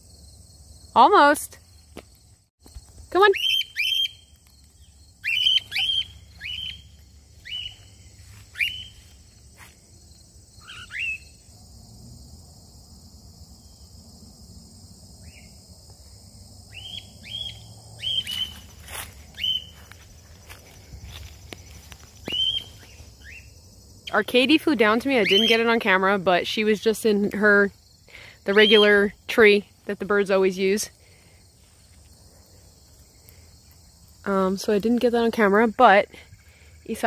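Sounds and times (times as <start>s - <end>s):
cockatiels whistling calls: 22.3s - 23.4s.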